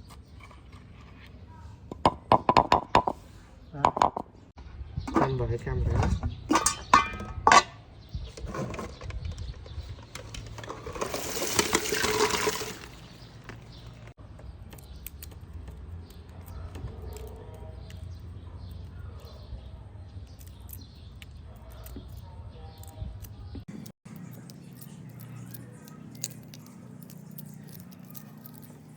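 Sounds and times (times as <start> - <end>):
liquid pouring: 10.4 - 13.8.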